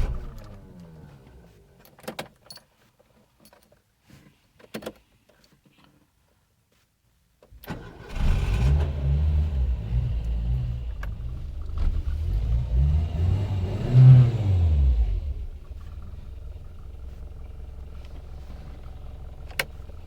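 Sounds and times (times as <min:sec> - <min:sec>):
car engine starting and revving: 0:00.0 - 0:01.7, 0:07.7 - 0:20.0
ignition click: 0:07.6 - 0:09.1.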